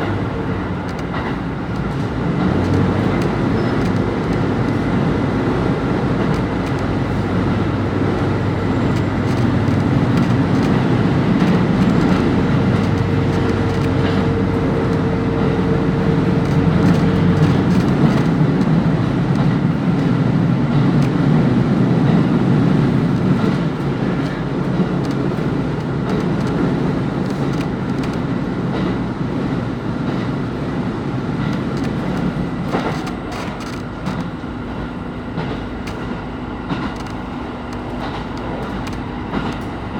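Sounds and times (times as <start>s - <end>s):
diesel engine hum: 0.0s - 39.9s
wheel and rail noise: 0.0s - 39.9s.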